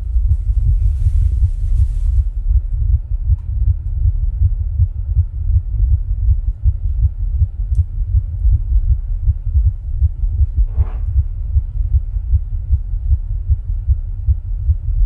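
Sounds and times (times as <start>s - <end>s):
heartbeat thumps: 0.0s - 15.0s.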